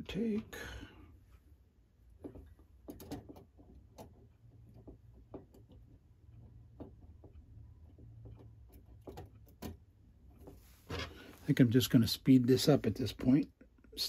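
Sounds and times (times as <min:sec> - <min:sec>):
small clicks and taps of clock parts: 0:02.1 - 0:10.6.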